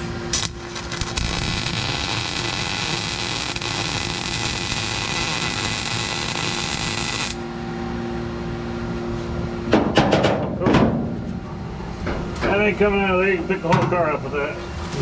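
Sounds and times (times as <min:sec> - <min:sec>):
welder crackling hiss: 0:00.0 - 0:07.4
low hum: 0:00.0 - 0:13.6.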